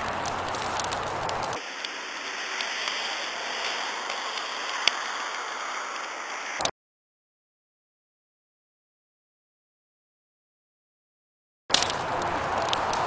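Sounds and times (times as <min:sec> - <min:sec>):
bonfire crackling and hissing: 0:00.0 - 0:06.7, 0:11.7 - 0:13.0
sharp pops from fire: 0:00.0 - 0:06.7, 0:11.7 - 0:13.0.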